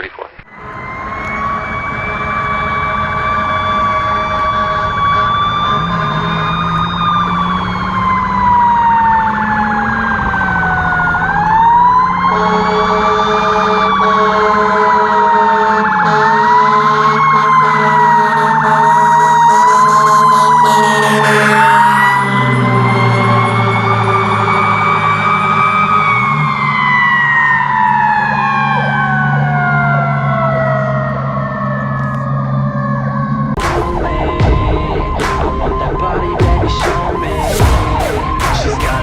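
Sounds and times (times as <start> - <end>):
fire engine siren wailing: 0.5 - 39.0
lower steady siren tone: 0.5 - 39.0
truck engine: 0.5 - 39.0.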